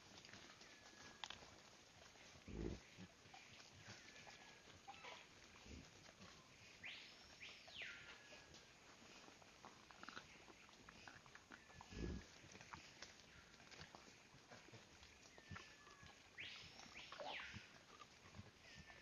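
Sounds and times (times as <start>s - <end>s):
low animal grunts: 2.4s - 3.2s, 9.8s - 12.4s.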